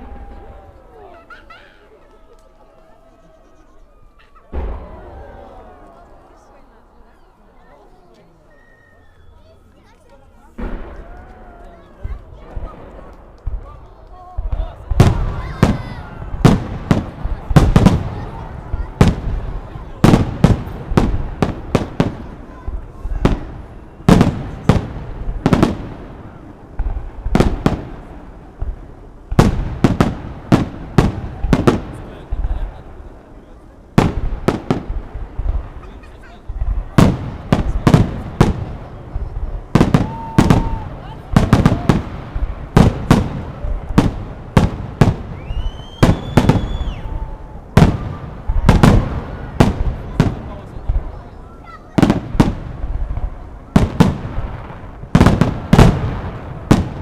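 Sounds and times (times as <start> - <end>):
fireworks bursting: 0.0 - 57.0
high rising firework whistle: 8.5 - 9.7, 45.3 - 48.6.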